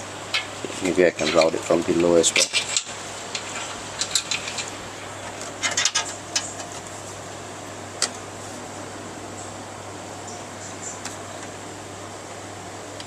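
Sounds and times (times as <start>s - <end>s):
steady background hum: 0.0s - 13.0s
cable clicks and rattles: 0.3s - 6.9s.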